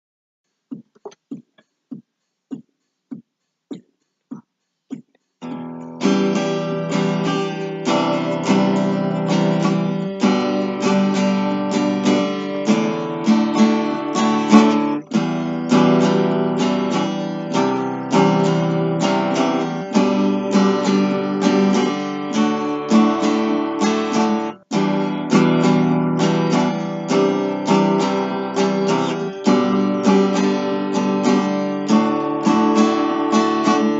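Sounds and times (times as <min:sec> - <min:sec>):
acoustic guitar strumming chords: 0:00.7 - 0:33.9.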